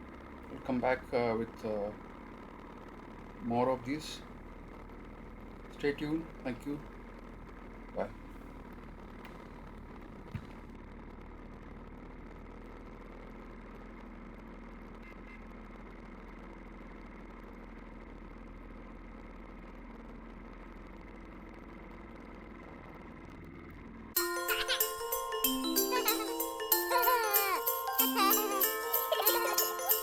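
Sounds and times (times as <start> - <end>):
engine idling: 0.0 - 30.0.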